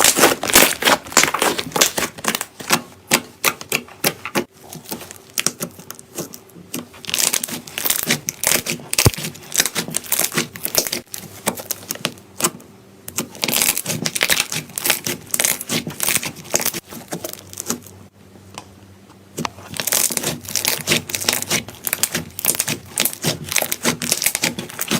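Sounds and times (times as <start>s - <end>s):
slime crackling and popping: 0.0s - 2.5s, 7.0s - 12.1s, 13.1s - 17.9s, 19.7s - 24.9s.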